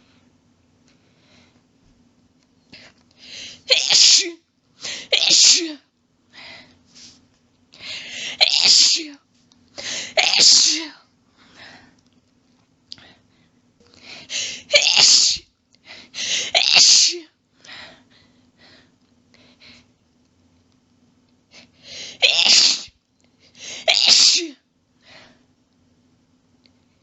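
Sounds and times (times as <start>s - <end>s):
faint breaths: 0.0s - 1.7s
person sneezing: 3.4s - 5.8s, 8.1s - 9.1s, 9.8s - 11.0s, 14.4s - 15.5s, 16.2s - 17.3s, 22.0s - 23.0s, 23.6s - 24.6s.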